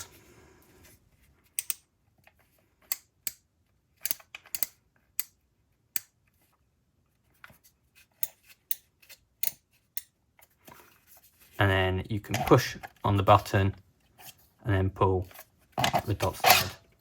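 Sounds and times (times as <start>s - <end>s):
plastic combination dial clicks: 4.0s - 5.4s.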